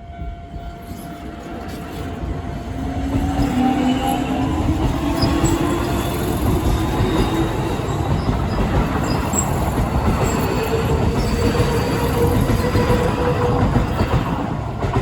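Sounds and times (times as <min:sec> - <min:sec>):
train wheels rumbling on rails: 0:00.0 - 0:15.0
wheel squeal: 0:03.2 - 0:13.2.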